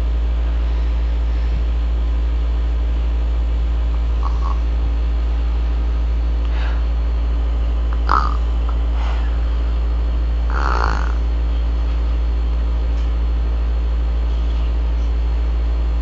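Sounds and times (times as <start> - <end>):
steady low hum: 0.0 - 16.0
soft snoring: 4.2 - 4.7, 8.0 - 9.4, 10.5 - 11.3.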